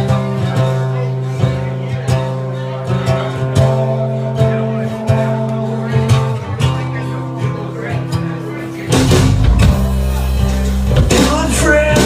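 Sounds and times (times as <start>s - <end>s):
acoustic guitar strumming chords: 0.0s - 12.0s.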